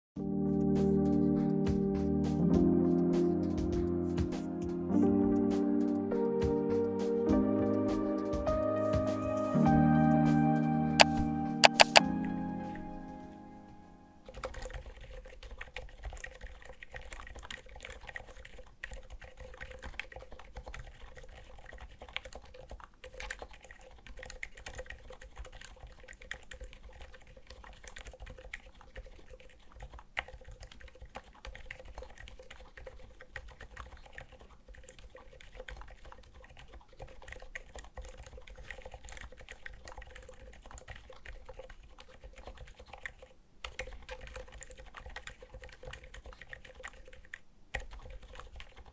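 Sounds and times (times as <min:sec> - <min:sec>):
mechanical keyboard typing: 0:11.0 - 0:12.0, 0:35.5 - 0:48.9.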